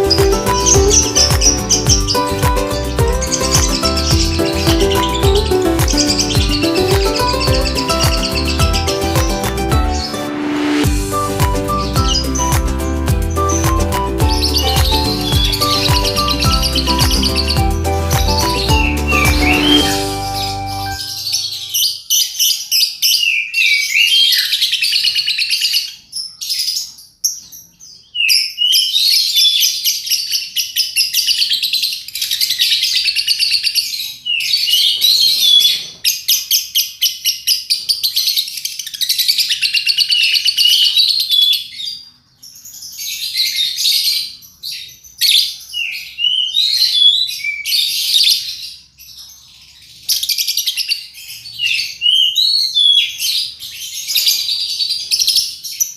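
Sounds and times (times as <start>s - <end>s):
lovebird chattering chirps: 0.0s - 9.1s.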